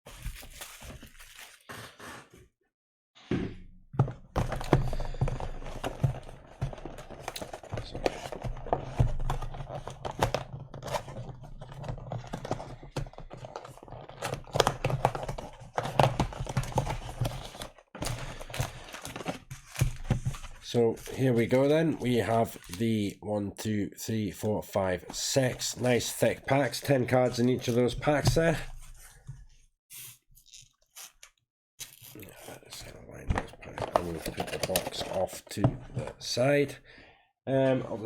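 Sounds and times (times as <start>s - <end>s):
packaging crinkling: 0.1s - 1.8s.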